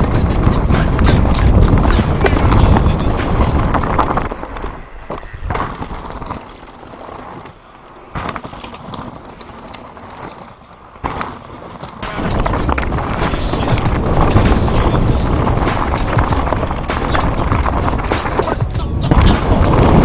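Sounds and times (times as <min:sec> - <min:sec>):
sharp knocks: 0:00.0 - 0:04.3
bike rattling: 0:00.0 - 0:20.0
bike tyres crunching over stones: 0:00.0 - 0:20.0.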